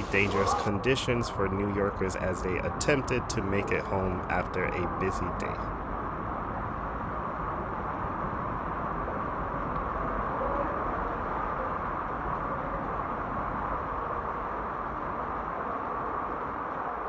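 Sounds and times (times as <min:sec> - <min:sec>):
floodwater rushing: 0:00.0 - 0:05.5.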